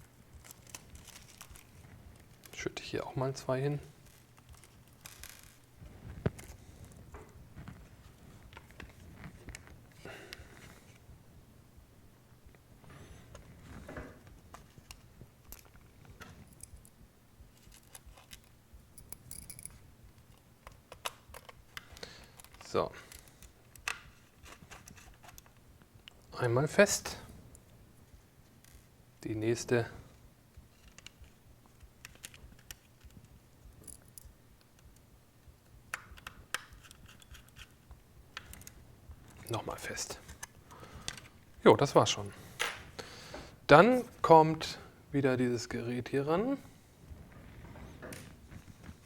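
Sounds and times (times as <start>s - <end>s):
screwdriver clicking and scratching: 35.9s - 38.8s.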